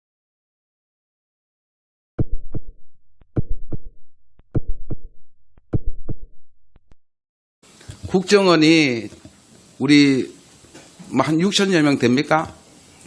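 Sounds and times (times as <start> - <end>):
heartbeat lub-dub beats: 2.2 - 7.0.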